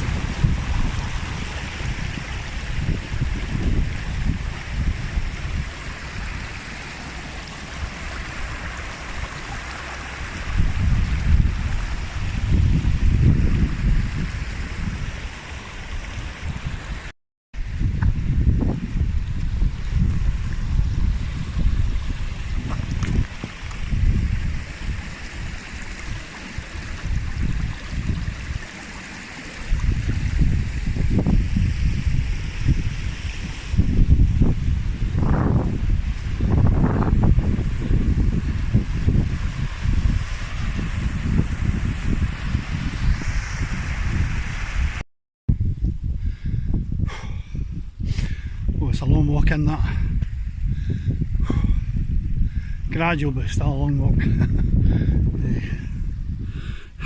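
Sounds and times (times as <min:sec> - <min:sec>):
wind buffeting microphone: 0:00.0 - 0:28.9, 0:29.5 - 0:57.0
steady rushing hiss: 0:37.2 - 0:45.0.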